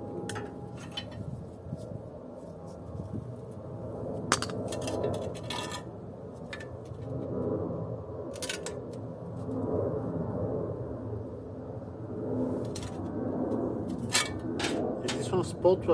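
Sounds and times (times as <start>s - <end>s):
metal parts clinking and scraping: 4.3s - 5.9s.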